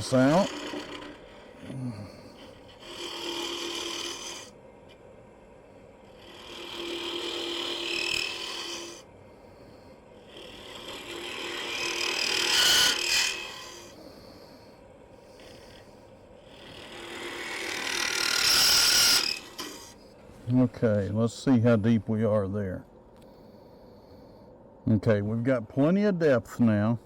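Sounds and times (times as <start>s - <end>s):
lathe tool cutting wood: 0.0s - 1.6s, 2.4s - 4.5s, 6.2s - 9.0s, 10.3s - 14.0s, 16.5s - 20.0s.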